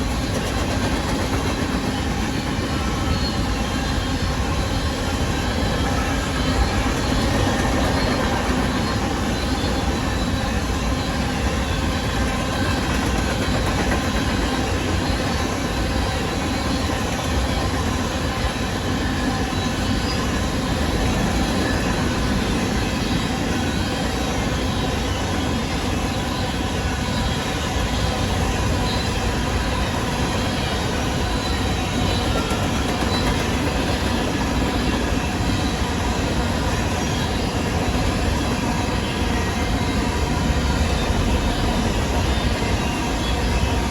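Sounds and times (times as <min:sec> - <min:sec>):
freight train rumbling past: 0:00.0 - 0:43.9.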